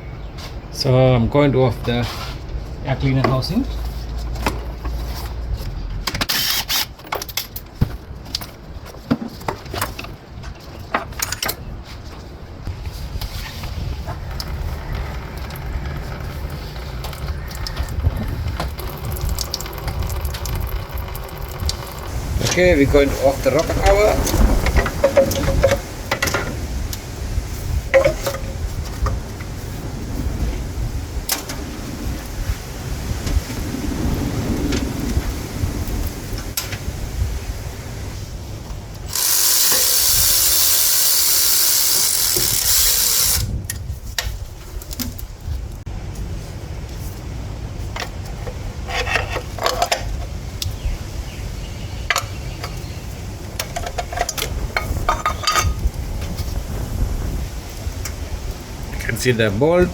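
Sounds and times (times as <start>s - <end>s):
steady low rumble: 13.9s - 39.0s
hand tools clinking on metal: 27.9s - 28.6s, 53.6s - 55.8s.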